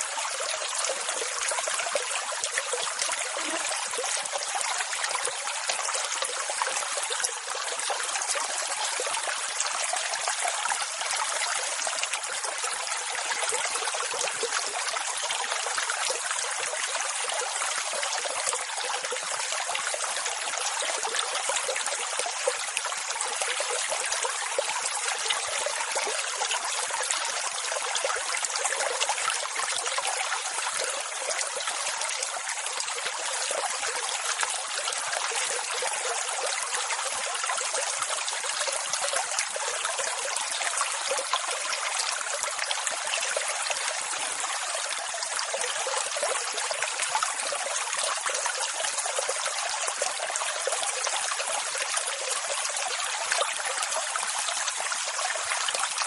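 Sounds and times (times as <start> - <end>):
water rushing: 2.9 - 4.9.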